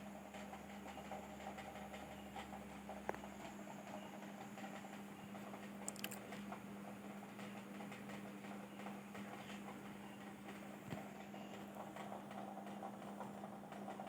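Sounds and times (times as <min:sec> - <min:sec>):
steady low hum: 0:00.0 - 0:14.0
small clicks: 0:05.6 - 0:06.6.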